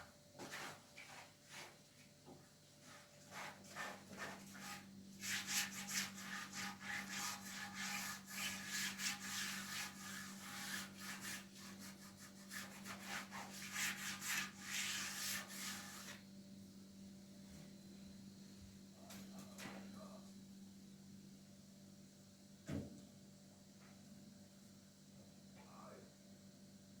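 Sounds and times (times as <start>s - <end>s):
rapid rubbing strokes: 2.8s - 16.2s.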